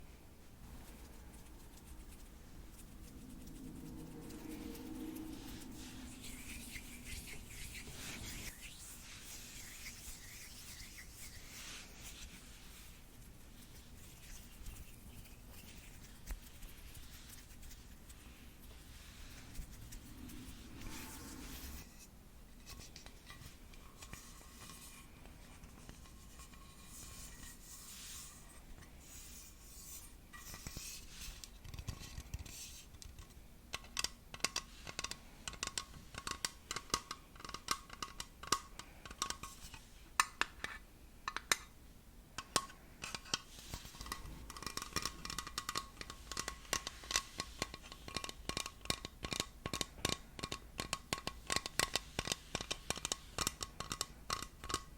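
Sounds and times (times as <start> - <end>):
soft scratching and rubbing: 0.0 - 33.0, 43.2 - 49.0.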